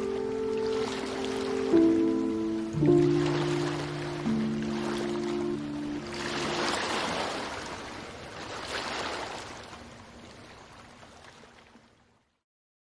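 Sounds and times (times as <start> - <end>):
soft music: 0.0 - 7.6
ocean waves washing onto beach: 0.0 - 11.6.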